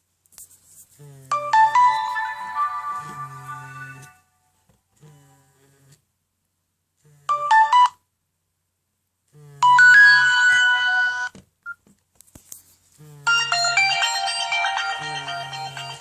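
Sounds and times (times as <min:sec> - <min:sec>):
phone ringtone melody: 0:01.3 - 0:04.2, 0:07.3 - 0:08.0, 0:09.6 - 0:11.3, 0:13.3 - 0:16.0
phone vibration buzzing: 0:02.9 - 0:04.2.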